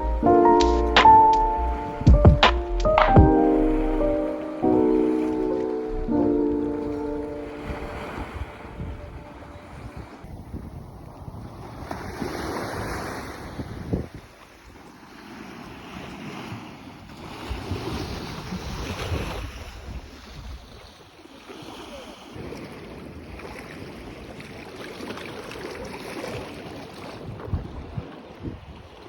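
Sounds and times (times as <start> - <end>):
sea waves washing ashore: 0.0 - 29.0
wind gusting across microphone: 4.7 - 14.4, 27.2 - 28.9.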